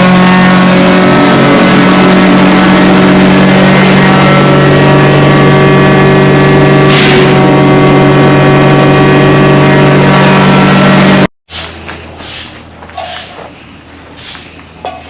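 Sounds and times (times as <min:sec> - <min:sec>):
gas engine running at high speed: 0:00.0 - 0:11.3.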